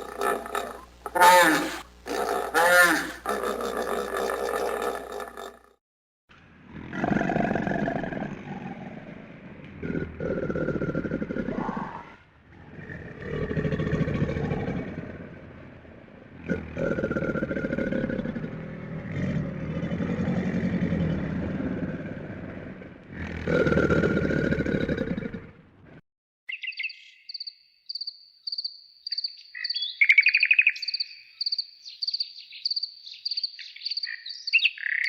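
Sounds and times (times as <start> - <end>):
deep animal roars: 0.0 - 5.8, 6.4 - 26.0
small bird chirping: 26.5 - 35.0.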